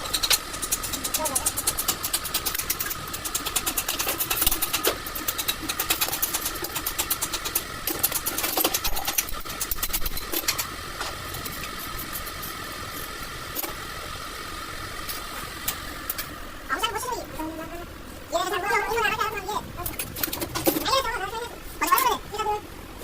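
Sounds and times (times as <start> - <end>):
mechanical clicking and rattling: 0.0 - 13.8, 19.8 - 21.1
steady machine hum: 0.0 - 23.0.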